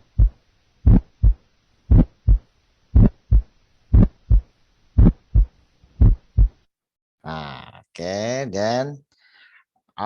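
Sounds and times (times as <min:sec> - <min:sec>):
heartbeat through stethoscope: 0:00.0 - 0:06.6.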